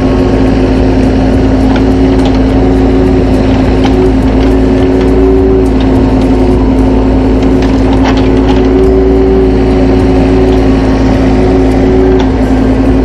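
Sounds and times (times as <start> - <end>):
heavy machinery engine running: 0.0 - 13.0
sharp knocks and cracks: 7.4 - 8.9.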